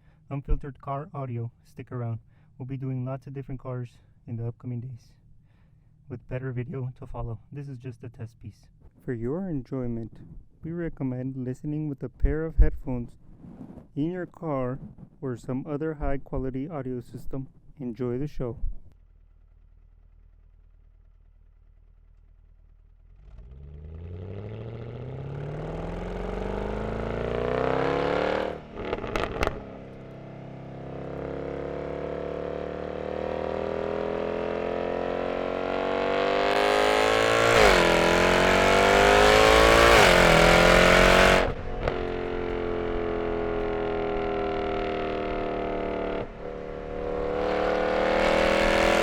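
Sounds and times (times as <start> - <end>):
exhaust cracks: 19.0 - 49.0
car engine revving: 23.0 - 49.0.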